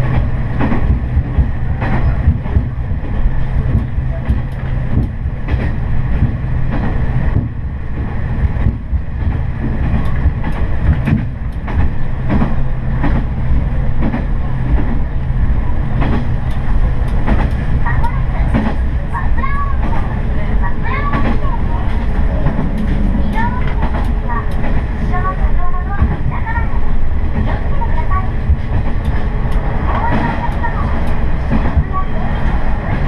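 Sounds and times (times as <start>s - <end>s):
train engine and wheel rumble: 0.0s - 33.0s
wheels clicking over rail joints: 15.9s - 33.0s.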